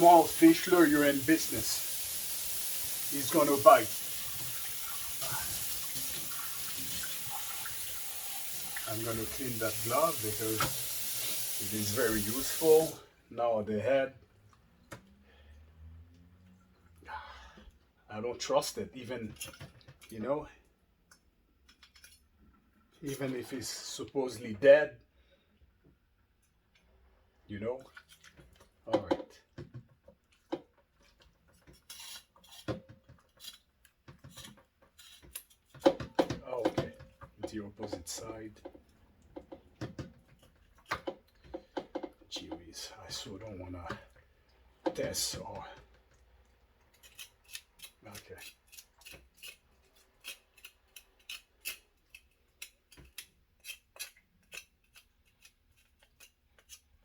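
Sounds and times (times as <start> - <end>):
knife scraping fish: 31.6 - 35.9, 46.9 - 57.0.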